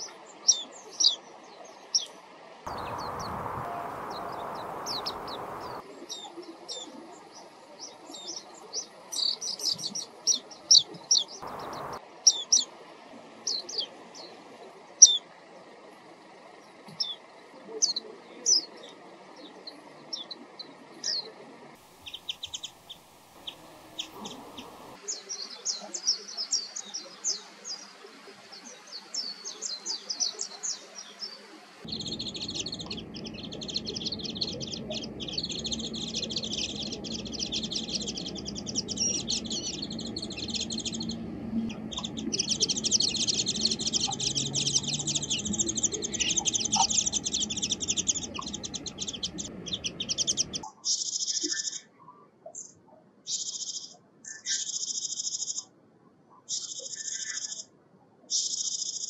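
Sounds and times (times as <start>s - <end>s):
songbirds chirping: 0.0s - 55.7s, 56.4s - 59.0s
rushing noise: 2.7s - 5.8s, 11.4s - 12.0s, 21.8s - 25.0s.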